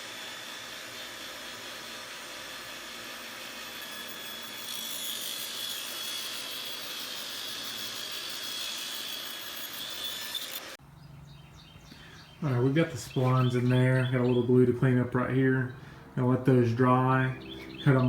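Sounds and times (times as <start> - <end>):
power saw cutting wood: 0.0 - 10.8, 12.4 - 14.9.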